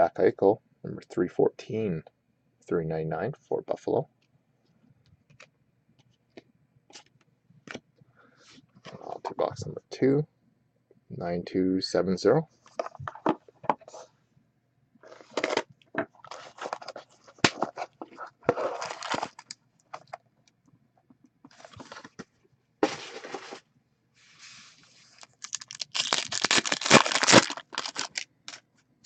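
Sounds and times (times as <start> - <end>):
packaging tearing and crinkling: 18.5 - 20.1, 25.2 - 28.6.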